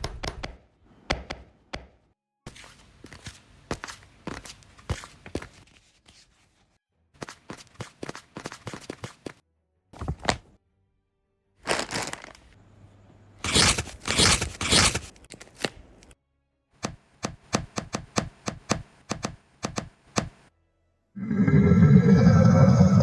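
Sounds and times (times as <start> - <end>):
rough scraping or rustling: 13.4 - 15.2.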